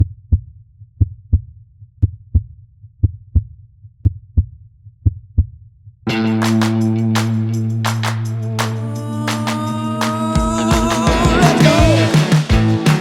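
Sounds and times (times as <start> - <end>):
heartbeat thumps: 10.4 - 13.0.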